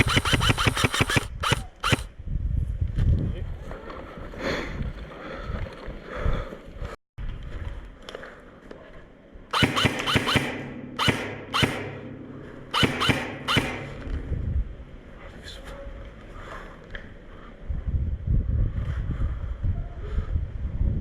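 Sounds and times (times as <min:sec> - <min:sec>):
airsoft gun shots: 0:00.0 - 0:02.1, 0:09.5 - 0:14.4.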